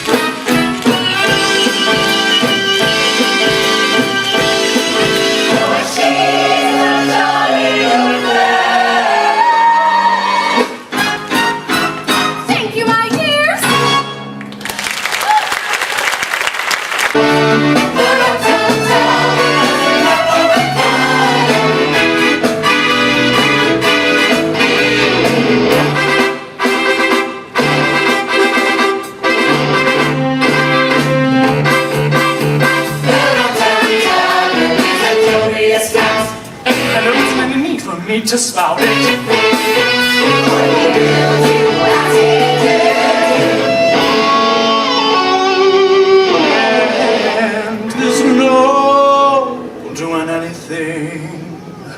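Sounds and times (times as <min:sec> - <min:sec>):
live band with brass: 0:00.0 - 0:14.4, 0:17.1 - 0:48.7
applause: 0:14.4 - 0:17.2
guitar chords: 0:17.2 - 0:37.4, 0:38.8 - 0:49.8.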